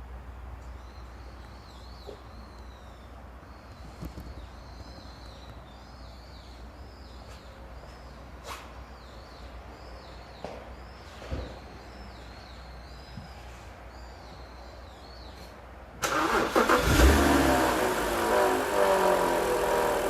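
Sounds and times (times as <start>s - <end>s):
small bird chirping: 0.6s - 15.6s.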